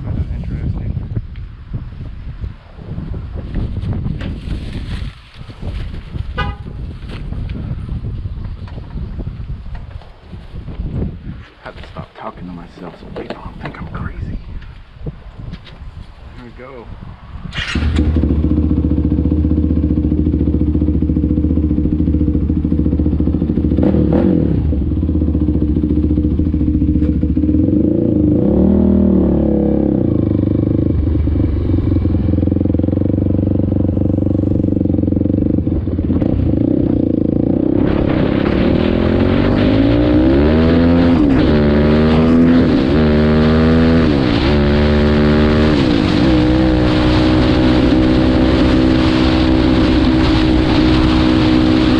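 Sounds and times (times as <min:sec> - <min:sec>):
quad bike engine revving: 0:17.6 - 0:51.9.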